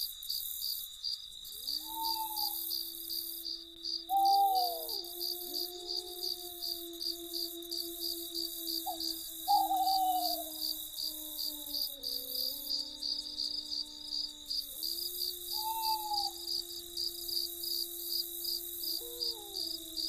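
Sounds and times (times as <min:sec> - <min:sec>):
crickets chirping: 0:00.0 - 0:20.0
wavering whistled calls: 0:01.8 - 0:02.6, 0:04.1 - 0:05.0, 0:08.7 - 0:10.6, 0:15.5 - 0:16.4
low tone drone: 0:04.8 - 0:10.8.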